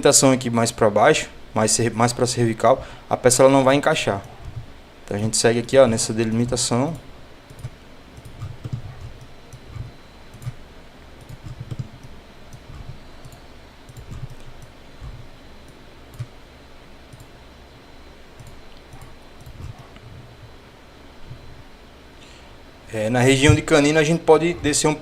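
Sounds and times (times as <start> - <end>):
computer mouse clicks: 4.2 - 4.7, 6.4 - 10.6, 11.2 - 16.3, 17.1 - 17.3, 18.4 - 20.1
soft low thumps: 15.0 - 15.3.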